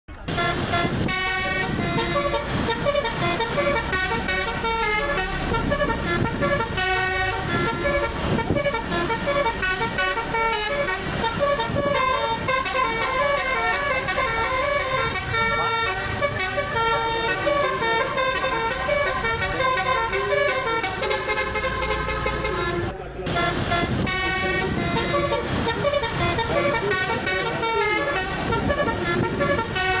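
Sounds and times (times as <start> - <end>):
low engine noise: 0.1 - 30.0
multi-tone bus horn melody: 0.1 - 30.0.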